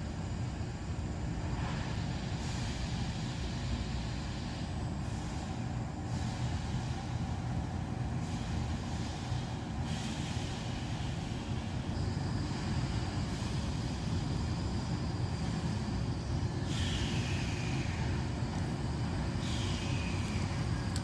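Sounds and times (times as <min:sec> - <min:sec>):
wood stove fire rumbling: 0:11.3 - 0:21.0.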